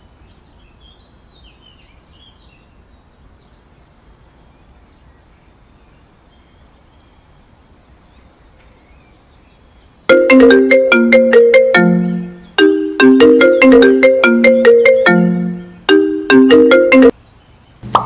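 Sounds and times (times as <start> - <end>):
phone ringtone melody: 10.1 - 17.1.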